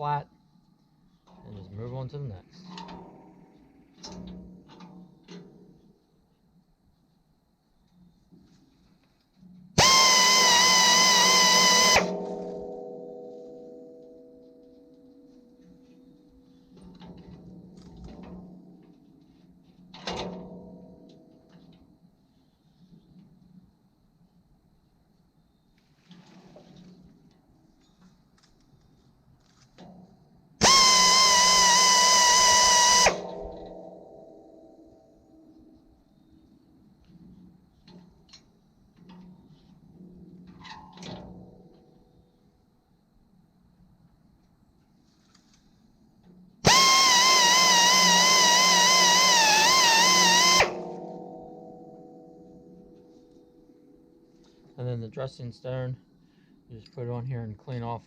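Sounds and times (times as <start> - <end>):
high-pitched grinding whine: 9.8 - 14.1, 30.6 - 34.7, 46.6 - 53.4
metal blade ringing: 12.0 - 14.7.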